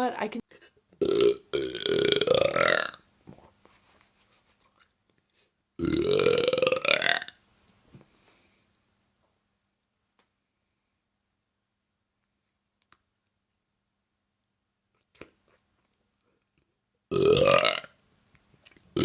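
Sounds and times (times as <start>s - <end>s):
woman burping: 1.0s - 3.0s, 5.8s - 7.3s, 17.1s - 17.9s.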